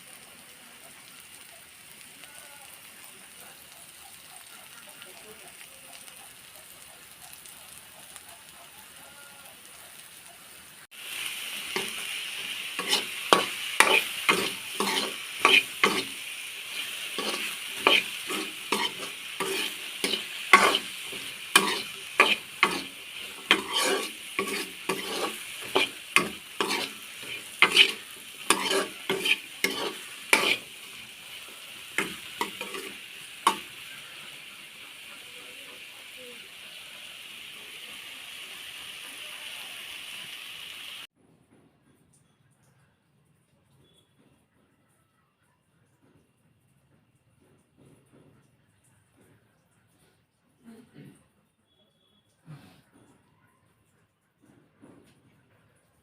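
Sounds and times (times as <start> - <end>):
okra sizzling in a pan: 0.0 - 41.2
spatula scraping a pan: 11.0 - 35.3.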